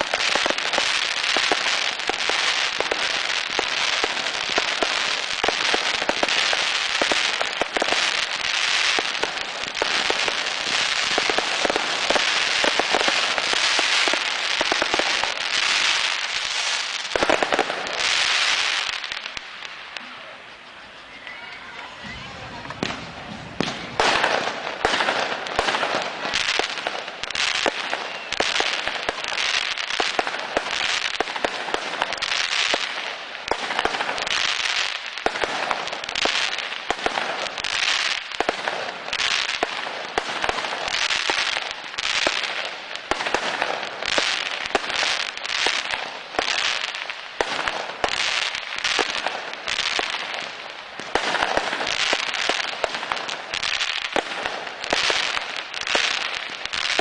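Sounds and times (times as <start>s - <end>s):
fireworks bangs: 0.0s - 57.0s
fireworks crackling bursts: 0.0s - 57.0s.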